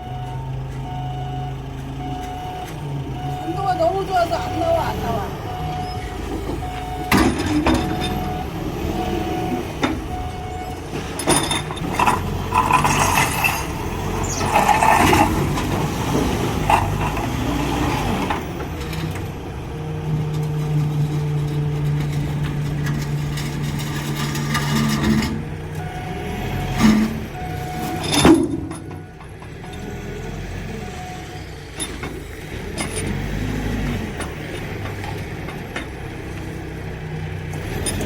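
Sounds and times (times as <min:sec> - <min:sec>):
short beeps: 0:00.0 - 0:10.8
truck engine running: 0:00.0 - 0:38.0
knocks and clanks: 0:05.7 - 0:08.4, 0:09.4 - 0:17.5, 0:20.2 - 0:25.9, 0:26.7 - 0:29.8.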